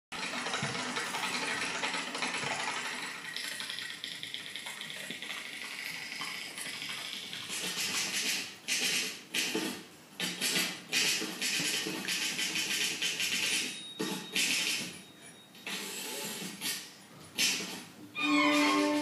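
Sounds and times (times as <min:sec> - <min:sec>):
mechanical typewriter clattering: 0:07.0 - 0:14.8.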